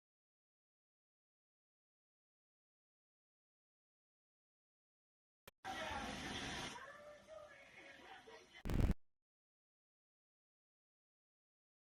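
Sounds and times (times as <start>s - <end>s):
loud sound cut off: 8.7s - 9.0s.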